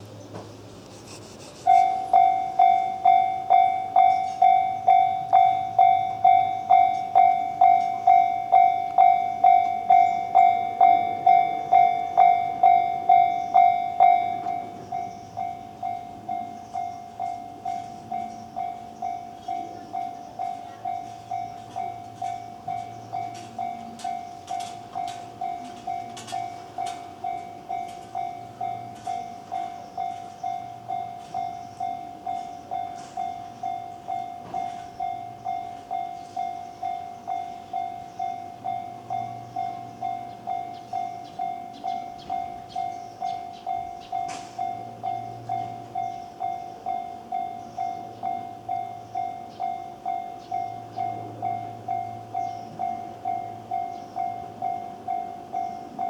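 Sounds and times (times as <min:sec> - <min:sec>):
train wheels clicking on rails: 0:00.0 - 0:56.0
level crossing bell ringing: 0:01.7 - 0:56.0.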